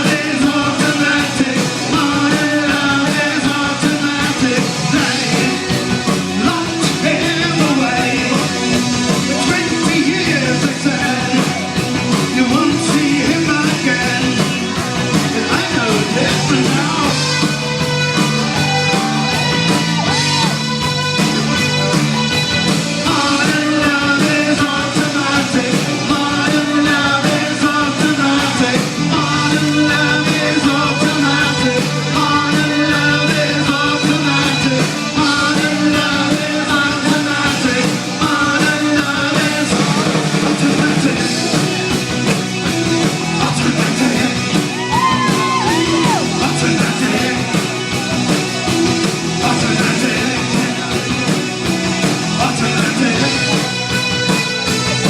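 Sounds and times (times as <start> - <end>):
person singing: 0.0 - 20.8, 22.5 - 55.0
bass guitar: 0.0 - 55.0
rock guitar: 0.0 - 55.0.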